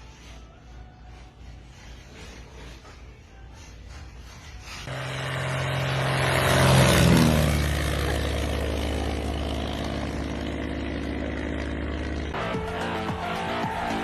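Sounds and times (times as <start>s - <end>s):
aircraft engine drone passing: 4.9s - 12.9s.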